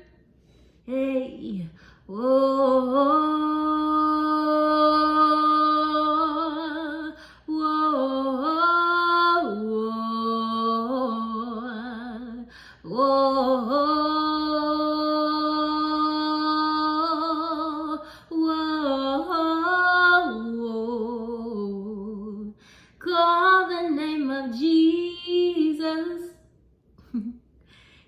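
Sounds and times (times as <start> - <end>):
singer breathing: 0.0 - 0.9, 22.6 - 23.0, 27.6 - 28.0
woman singing unaccompanied: 0.9 - 26.4.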